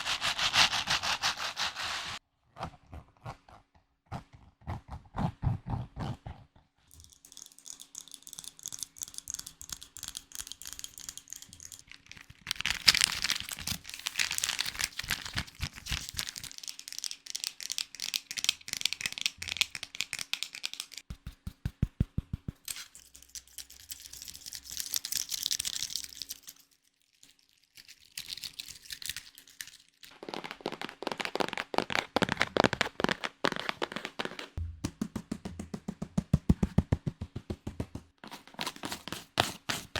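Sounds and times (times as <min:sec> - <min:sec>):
crinkling and crackling: 0:10.6 - 0:19.8, 0:22.6 - 0:34.6
fast low tapping: 0:34.6 - 0:38.1.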